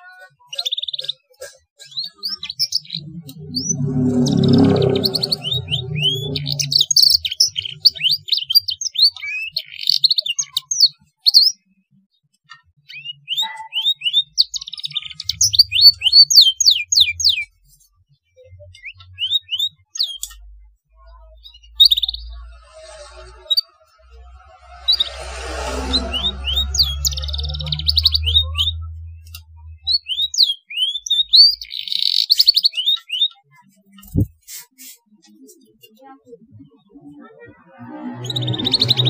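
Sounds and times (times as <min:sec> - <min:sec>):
canary singing: 0:01.9 - 0:10.7, 0:12.9 - 0:17.5, 0:23.3 - 0:33.4.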